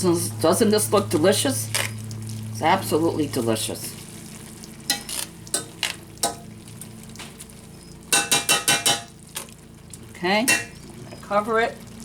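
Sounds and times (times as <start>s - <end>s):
sauce sizzling: 1.3s - 12.0s.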